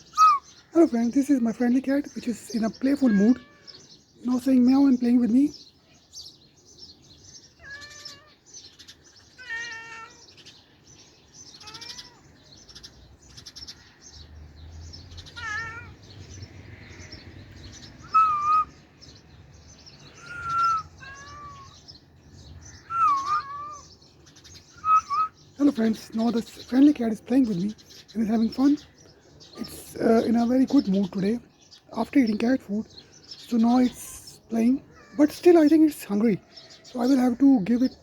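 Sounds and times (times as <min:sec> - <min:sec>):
birds chirping faintly: 0:00.0 - 0:38.0
cat meowing: 0:02.8 - 0:03.8, 0:07.5 - 0:08.4, 0:09.3 - 0:10.5, 0:11.5 - 0:12.3, 0:15.2 - 0:16.0, 0:18.1 - 0:18.7, 0:20.2 - 0:21.8, 0:22.8 - 0:24.0, 0:24.8 - 0:25.3, 0:34.9 - 0:35.4.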